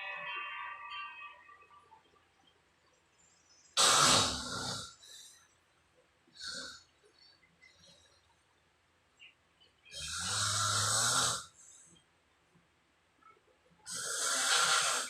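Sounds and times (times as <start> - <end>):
person snoring: 3.8 - 5.0, 9.9 - 11.5, 13.9 - 15.0.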